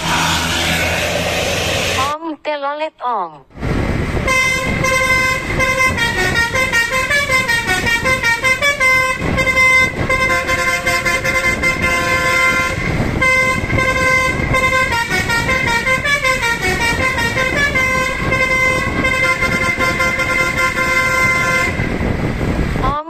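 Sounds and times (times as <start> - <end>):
bus rumble: 0.0 - 23.0
musical bus horn tune: 4.2 - 22.4.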